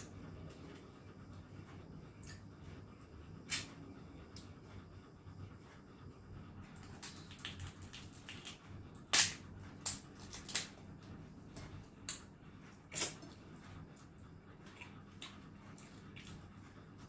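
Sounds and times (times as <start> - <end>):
eating cracks and clicks: 6.9 - 10.8.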